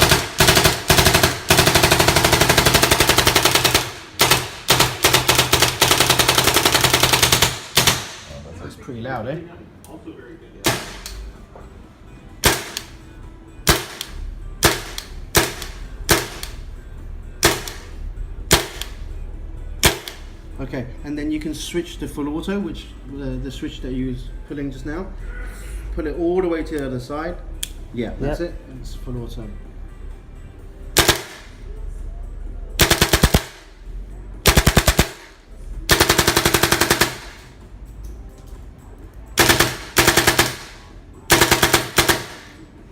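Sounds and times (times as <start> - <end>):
airsoft rifle shots: 0.0 - 8.3, 10.6 - 11.1, 12.4 - 13.0, 13.6 - 16.6, 17.4 - 19.0, 19.8 - 20.3, 31.0 - 31.6, 32.8 - 33.7, 34.4 - 35.3, 35.9 - 37.5, 39.4 - 42.6.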